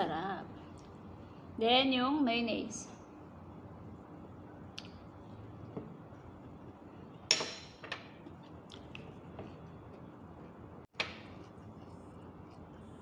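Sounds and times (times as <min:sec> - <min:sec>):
faint room hum: 0:00.0 - 0:13.0
tableware clinking: 0:07.3 - 0:08.2.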